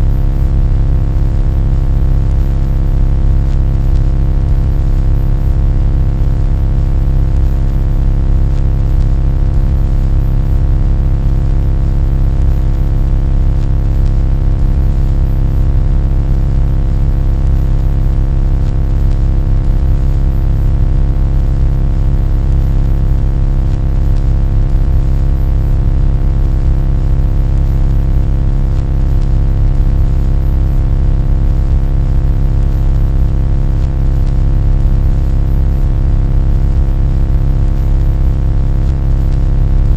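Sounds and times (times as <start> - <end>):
loud low drone: 39.7 - 39.9.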